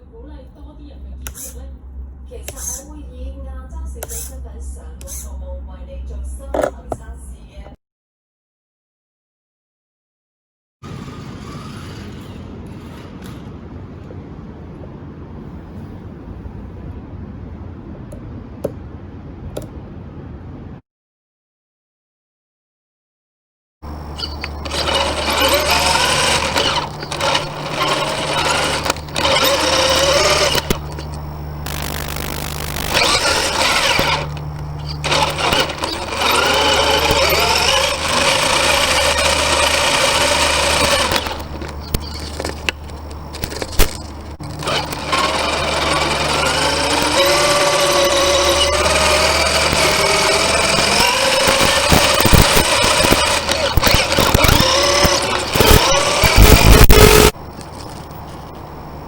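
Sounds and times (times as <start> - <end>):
steady low hum: 0.0 - 7.8, 23.8 - 59.0
electric motor whining: 2.4 - 3.0, 23.8 - 58.8.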